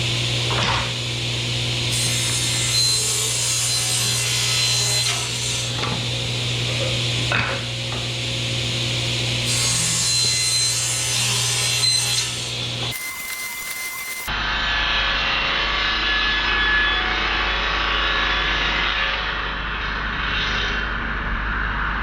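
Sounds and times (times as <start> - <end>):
power tool rasping plywood: 9.5 - 14.3.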